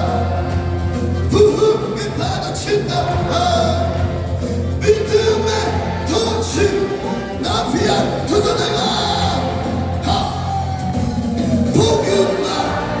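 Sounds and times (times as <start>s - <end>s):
low musical accompaniment: 0.0s - 13.0s
person singing: 0.0s - 13.0s.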